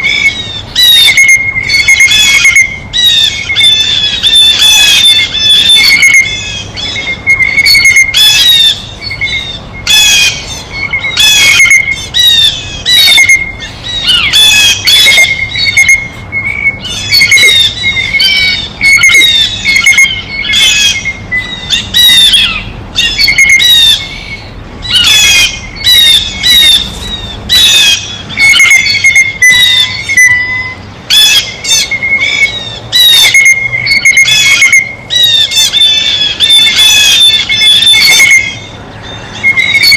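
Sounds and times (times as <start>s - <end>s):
blue jays calling: 0.0s - 39.9s.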